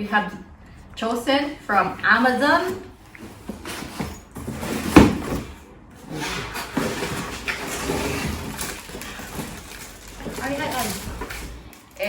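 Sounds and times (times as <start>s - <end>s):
cardboard box scraping and rustling: 3.2s - 11.6s.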